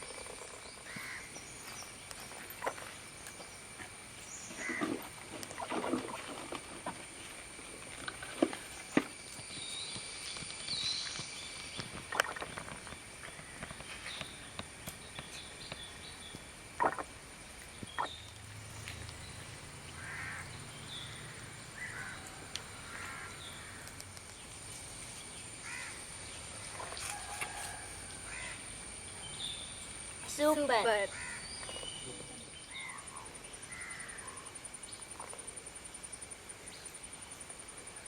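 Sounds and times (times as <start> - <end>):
crows cawing: 0.9 - 1.3, 20.0 - 20.5, 21.1 - 24.0, 25.6 - 26.0, 28.3 - 28.6, 31.1 - 31.5, 33.7 - 34.4.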